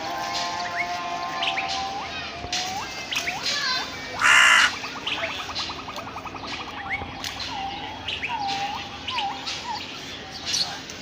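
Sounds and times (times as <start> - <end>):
birds chirping and whistling: 0.0 - 11.0
loud harsh bird call: 4.1 - 5.8.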